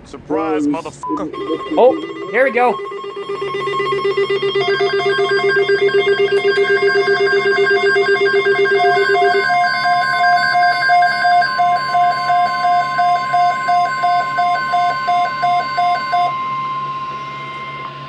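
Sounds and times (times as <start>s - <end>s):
repeating electronic beep: 1.0s - 16.3s
steady high tone: 1.0s - 17.9s
fast warbling electronic tone: 1.1s - 16.3s.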